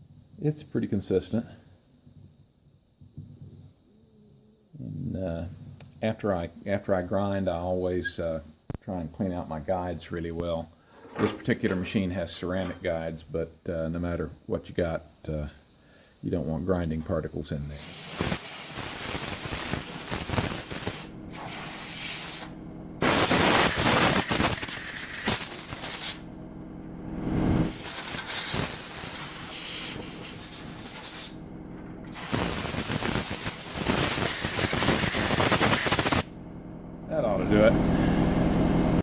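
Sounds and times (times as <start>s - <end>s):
compressed air hissing bursts: 15.2s - 16.5s, 17.6s - 26.2s, 27.6s - 31.4s, 32.0s - 36.3s.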